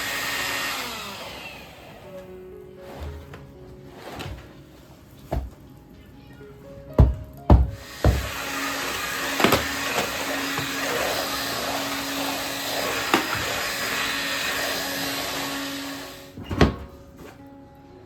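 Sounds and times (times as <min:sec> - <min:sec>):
motorised appliance humming: 0:00.0 - 0:04.6, 0:07.0 - 0:17.4
knocks: 0:06.9 - 0:08.4.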